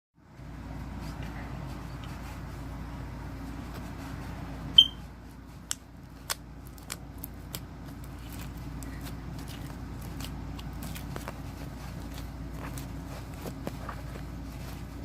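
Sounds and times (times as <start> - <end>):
foam slime being handled: 5.3 - 15.0.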